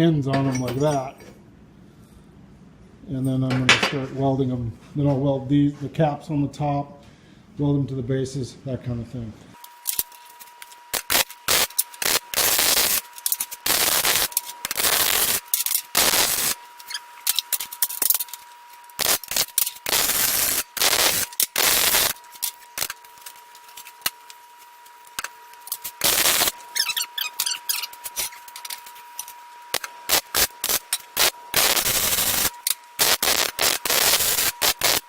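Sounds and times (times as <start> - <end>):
arc welder crackling: 9.6 - 35.0.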